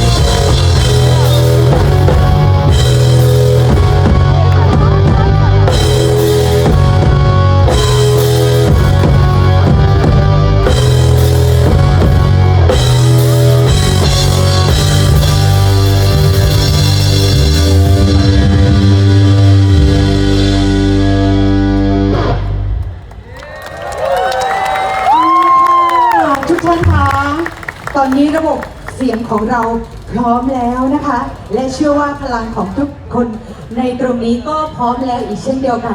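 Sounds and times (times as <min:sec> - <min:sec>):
live rock band playing: 0:00.0 - 0:23.0.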